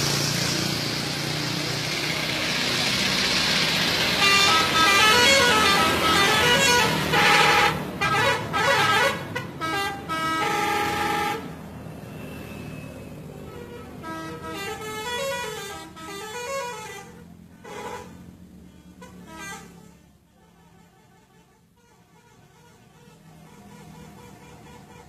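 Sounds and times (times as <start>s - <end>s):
multi-tone musical bus horn: 4.0s - 11.7s, 13.3s - 25.0s.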